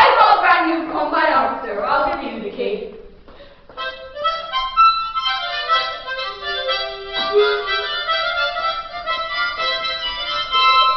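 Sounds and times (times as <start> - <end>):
free-reed instrument playing: 3.8 - 10.9.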